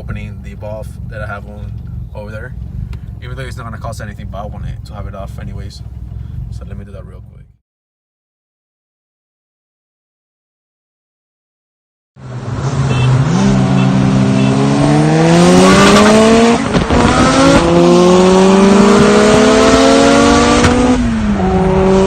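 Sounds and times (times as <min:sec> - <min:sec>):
car engine accelerating hard: 0:12.2 - 0:22.0.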